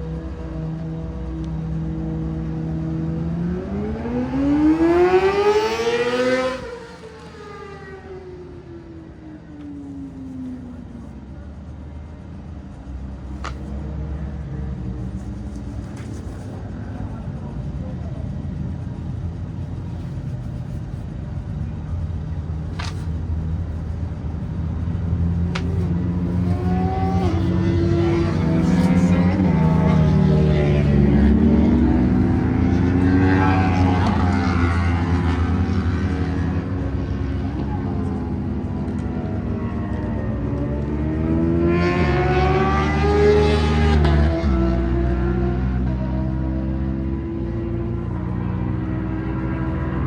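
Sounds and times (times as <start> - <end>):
engine revving: 2.5 - 8.1, 25.1 - 46.4.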